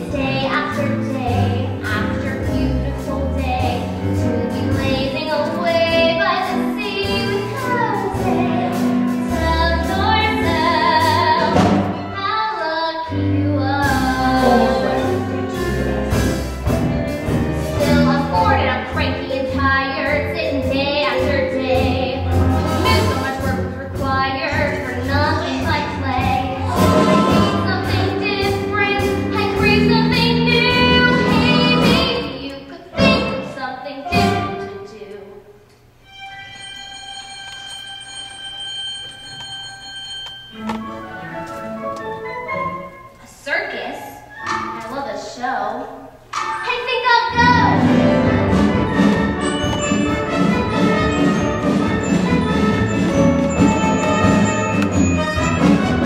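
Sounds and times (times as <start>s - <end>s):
instrumental accompaniment: 0.0s - 12.5s, 13.1s - 34.9s, 35.6s - 43.3s, 44.1s - 45.1s, 46.1s - 56.0s
person singing: 13.3s - 15.6s.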